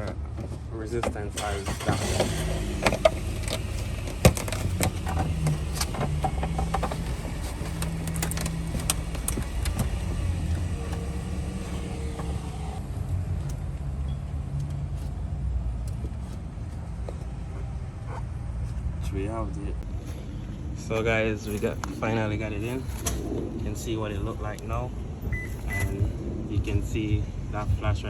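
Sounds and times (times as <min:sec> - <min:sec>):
car engine idling: 0:00.8 - 0:28.0.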